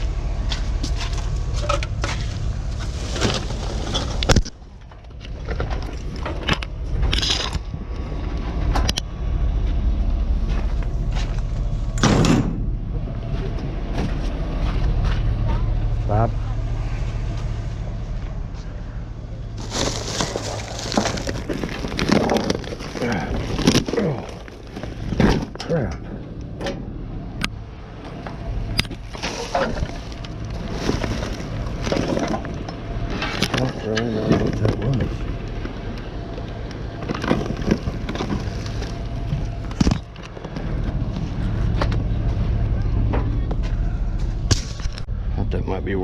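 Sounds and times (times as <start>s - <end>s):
low vehicle hum: 0.0s - 46.0s
objects clattering and knocking: 0.5s - 9.0s, 19.6s - 26.8s, 28.1s - 42.4s.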